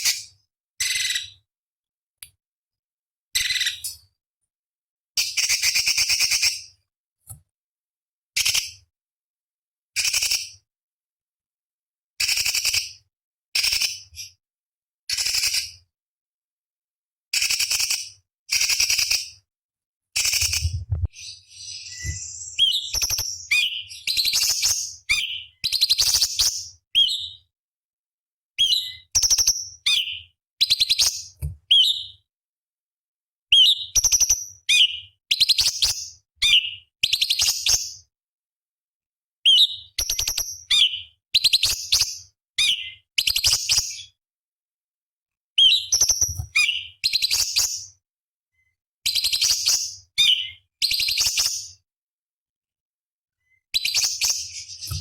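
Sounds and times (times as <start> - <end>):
bird singing fast high chirps: 20.2 - 27.4, 28.6 - 32.2, 45.6 - 47.9.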